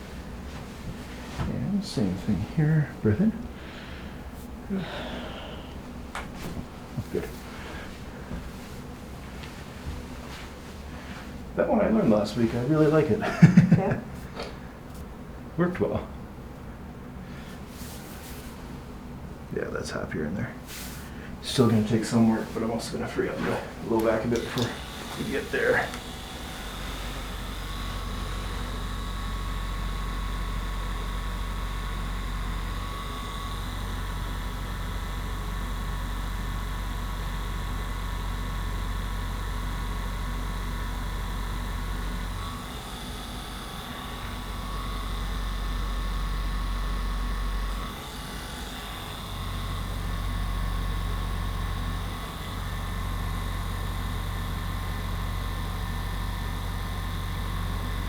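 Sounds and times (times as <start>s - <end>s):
electric motor humming: 20.8s - 58.0s.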